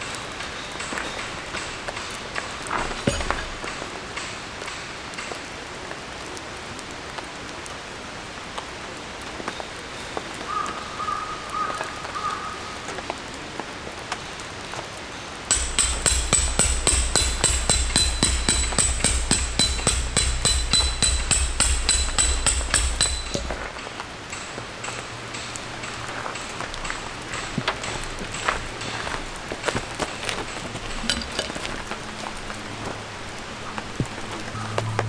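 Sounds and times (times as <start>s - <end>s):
steady rain: 3.7s - 15.5s
hammer blows on metal stake: 15.5s - 28.9s.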